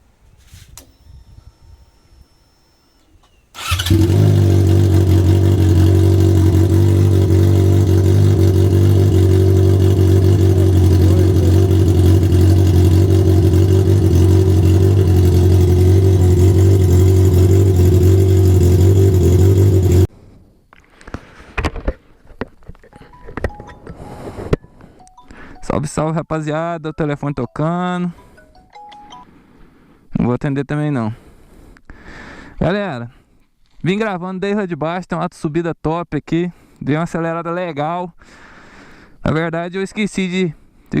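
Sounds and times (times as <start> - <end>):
motorcycle engine idling loudly: 3.6 - 20.1.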